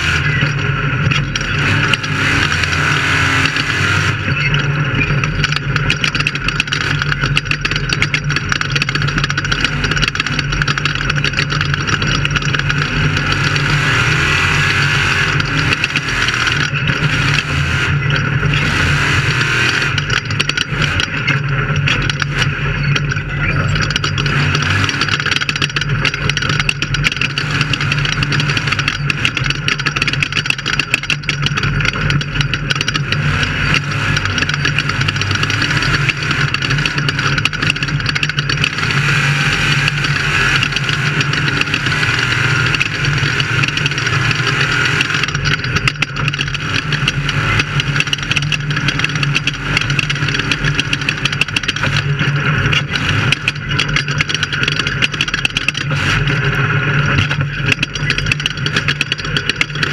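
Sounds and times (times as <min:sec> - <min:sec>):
knocks and rattles: 0:00.0 - 0:59.9
vehicle engine running under load: 0:00.0 - 0:59.9.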